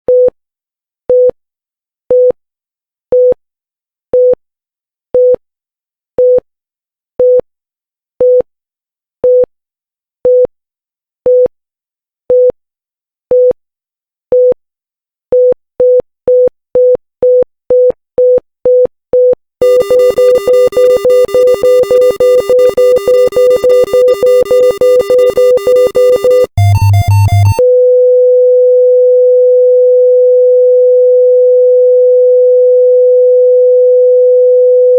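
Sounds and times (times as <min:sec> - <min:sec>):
buzzing alarm tone: 0:19.6 - 0:27.6
continuous flatline tone: 0:19.6 - 0:27.6
heart monitor beeping: 0:19.6 - 0:27.6
warbling alarm: 0:19.6 - 0:27.6.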